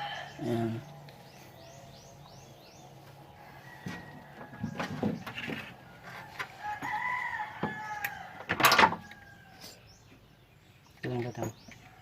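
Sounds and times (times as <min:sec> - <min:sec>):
rooster crowing: 0:00.0 - 0:00.4, 0:03.4 - 0:05.0, 0:05.9 - 0:09.7.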